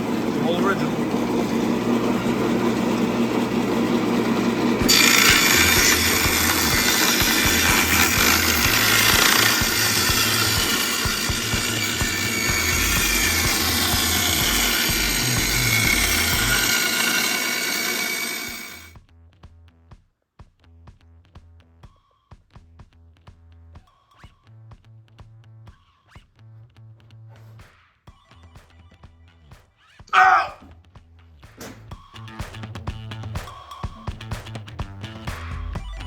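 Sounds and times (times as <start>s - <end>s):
table saw cutting wood: 0.0s - 18.9s.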